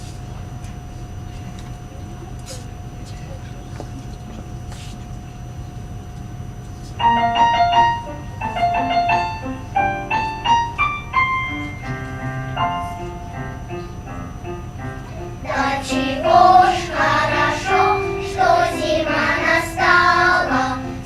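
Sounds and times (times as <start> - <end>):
piano playing: 7.0 - 21.0.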